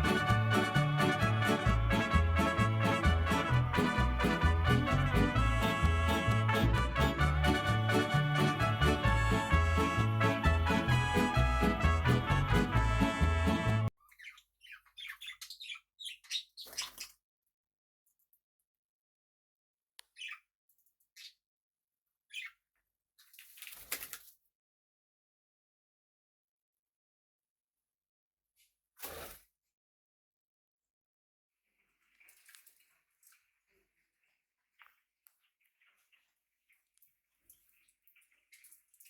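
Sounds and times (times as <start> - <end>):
upbeat swing music with brass: 0.0 - 13.9
parrot chirps: 14.0 - 17.2, 20.1 - 20.5, 22.3 - 22.6.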